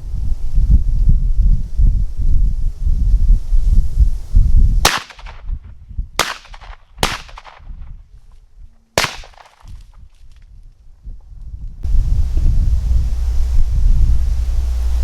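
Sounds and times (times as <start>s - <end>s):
shotgun shots with echo: 4.8s - 5.5s, 6.2s - 7.9s, 9.0s - 9.8s.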